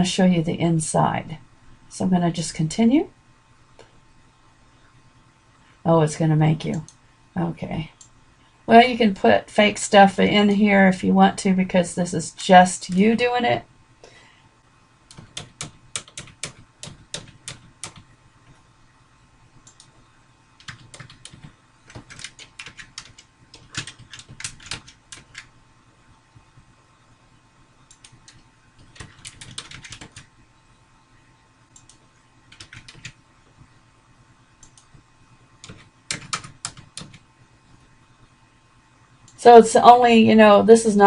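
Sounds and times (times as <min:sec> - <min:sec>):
typing on computer keyboard: 0:15.1 - 0:18.1, 0:20.6 - 0:25.5, 0:27.9 - 0:30.3, 0:31.8 - 0:33.2, 0:35.6 - 0:37.2.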